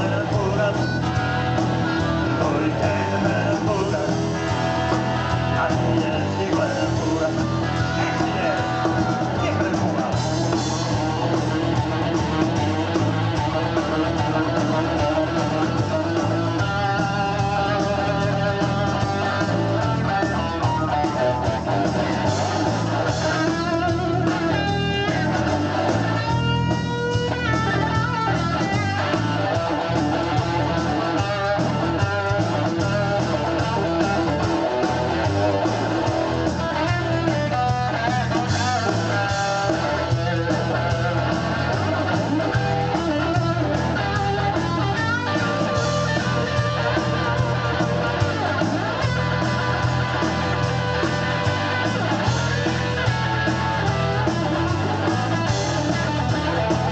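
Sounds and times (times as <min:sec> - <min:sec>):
blues-rock band playing: 0:00.0 - 0:56.9
electric guitar lead: 0:00.0 - 0:56.9.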